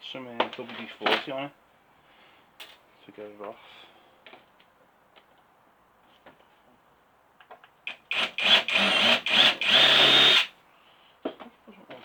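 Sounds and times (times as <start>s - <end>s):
impact driver bursts: 7.9s - 10.5s.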